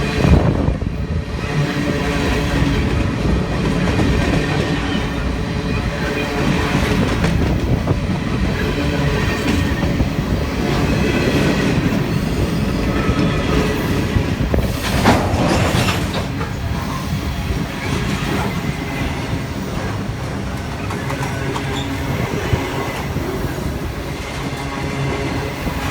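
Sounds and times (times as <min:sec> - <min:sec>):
freight train rumble: 0:00.0 - 0:25.9
wheels clacking over rail joints: 0:06.0 - 0:23.3.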